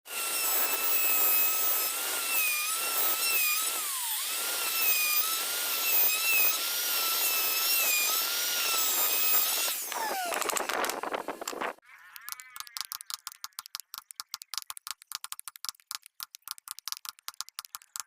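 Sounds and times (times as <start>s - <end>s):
router whining and cutting wood: 0.1s - 12.8s.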